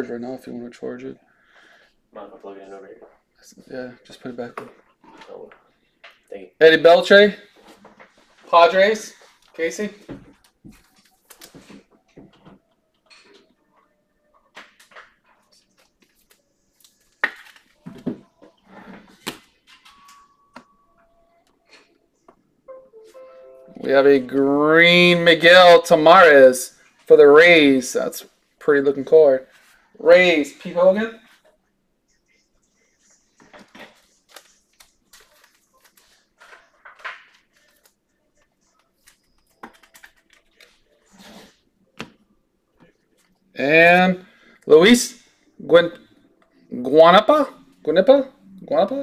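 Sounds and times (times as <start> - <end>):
cards rustling: 10.4 - 12.0, 14.6 - 18.2, 33.0 - 42.2.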